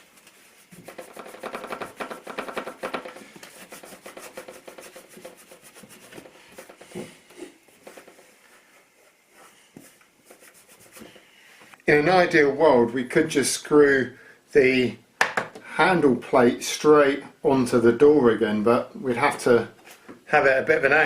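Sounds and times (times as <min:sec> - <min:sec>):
rubbing strokes on wood: 0:00.0 - 0:11.5.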